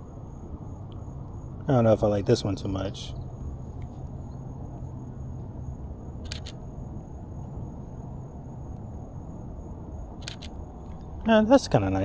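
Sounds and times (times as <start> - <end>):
camera shutter double click: 6.2 - 6.6, 10.2 - 10.6.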